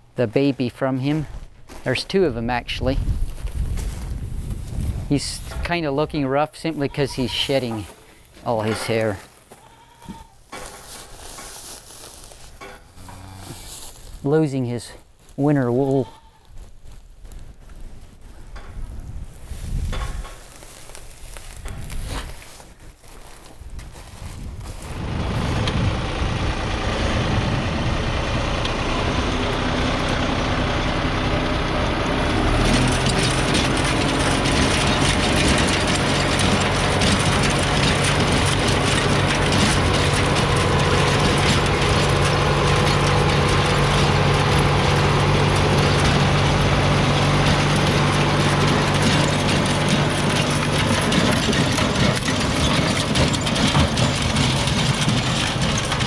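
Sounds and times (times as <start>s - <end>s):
tractor engine running: 0.0s - 9.6s, 16.8s - 56.0s
rotary tiller through rocky ground: 7.2s - 13.2s, 15.2s - 25.8s, 31.7s - 56.0s.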